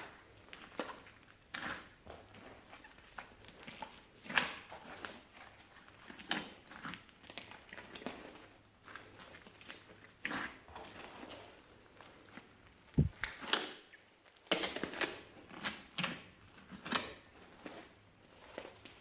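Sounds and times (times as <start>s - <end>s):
dull thump: 13.0s - 13.3s.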